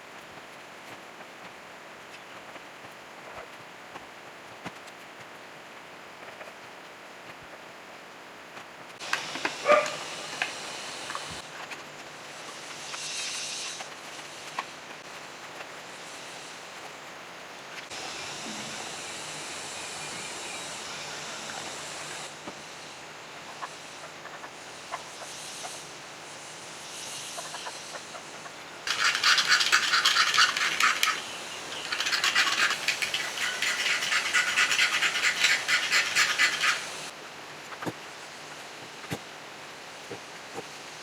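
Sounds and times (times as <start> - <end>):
fast rasping scraping strokes: 17.9 - 22.3, 28.8 - 37.1.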